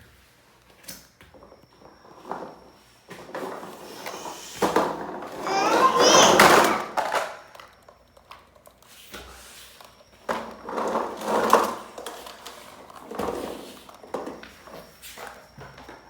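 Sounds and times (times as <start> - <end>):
plastic toys scraping and sliding: 3.2 - 7.2
child's voice: 5.4 - 7.0.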